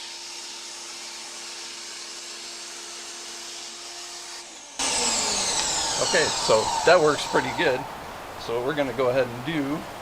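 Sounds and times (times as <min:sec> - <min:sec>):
pressure washer motor hum: 0:04.6 - 0:08.2.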